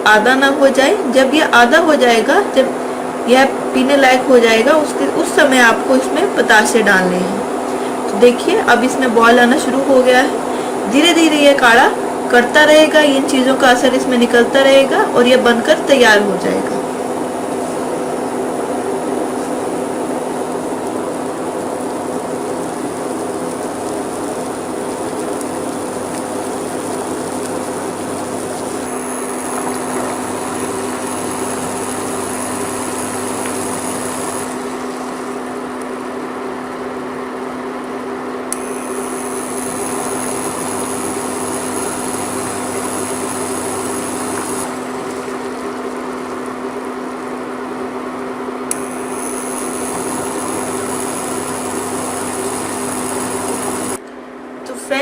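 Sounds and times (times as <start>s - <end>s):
liquid boiling in a pan: 16.4s - 54.0s.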